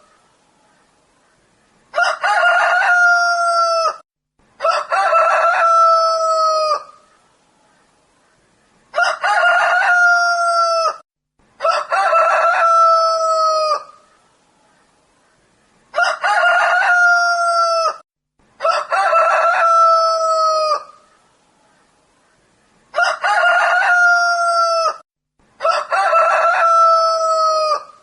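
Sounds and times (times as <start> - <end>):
rooster crowing: 1.9 - 4.0, 4.6 - 7.0, 8.9 - 11.0, 11.6 - 14.0, 15.9 - 18.0, 18.6 - 21.0, 22.9 - 25.0, 25.6 - 28.0.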